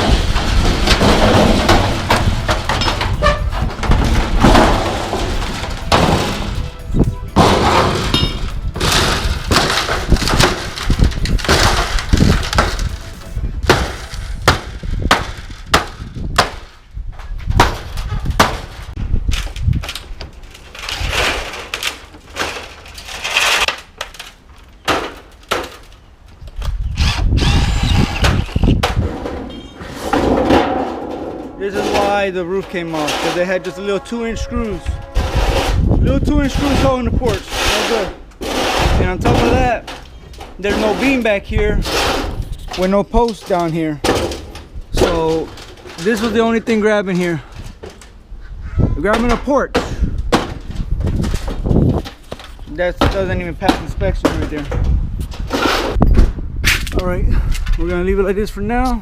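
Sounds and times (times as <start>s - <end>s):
metal pieces clattering and banging: 0.0s - 14.8s, 20.0s - 25.9s, 28.8s - 48.2s.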